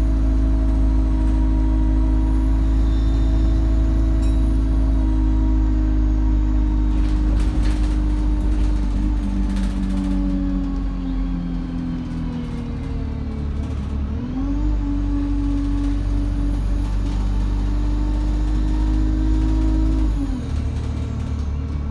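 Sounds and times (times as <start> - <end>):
bus engine pulling away: 0.0 - 21.9
turbocharger whistling: 2.3 - 4.4.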